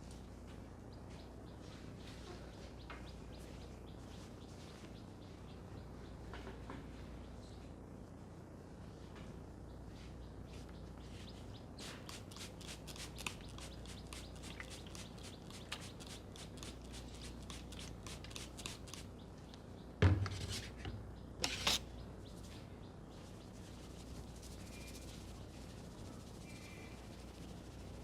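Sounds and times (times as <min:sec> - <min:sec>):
fingers crackling in hair: 0:12.1 - 0:19.1.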